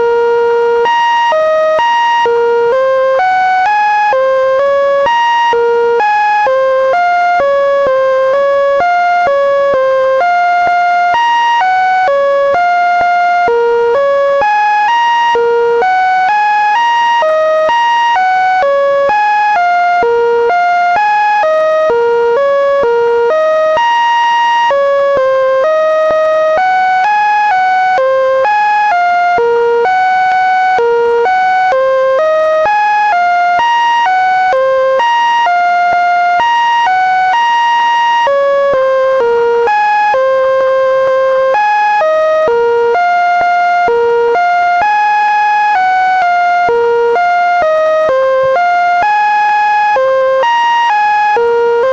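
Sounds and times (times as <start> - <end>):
electronic tones stepping in pitch: 0.0 - 51.9.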